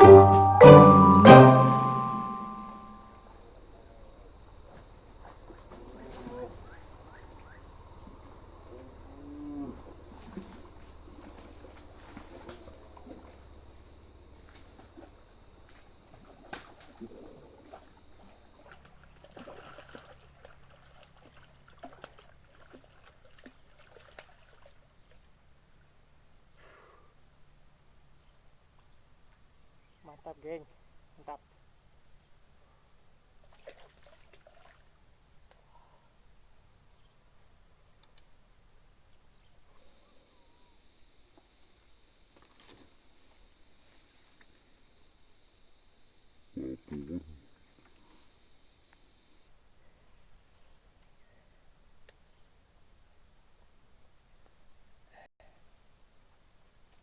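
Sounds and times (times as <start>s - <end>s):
insects chirring: 2.4s - 57.0s
water splashing and lapping: 10.0s - 13.6s, 14.4s - 25.3s, 33.4s - 35.1s
faint clicks: 38.0s - 38.3s.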